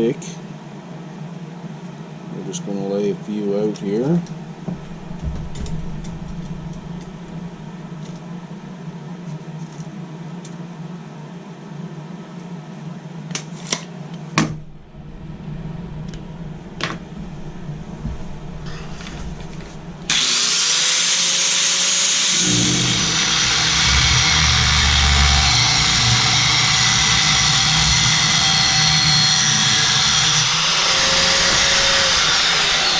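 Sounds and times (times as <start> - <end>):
grinder cutting metal rod: 20.1 - 32.9.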